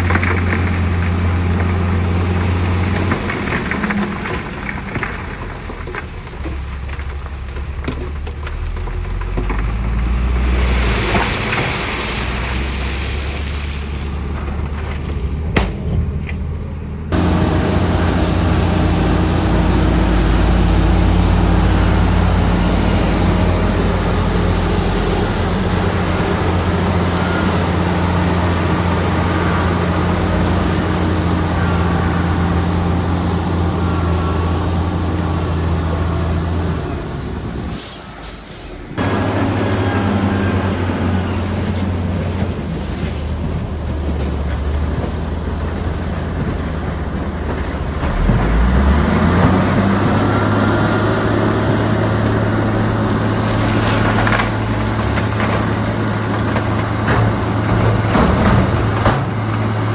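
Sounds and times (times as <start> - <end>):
diesel machinery engine drone: 16.2 - 59.9.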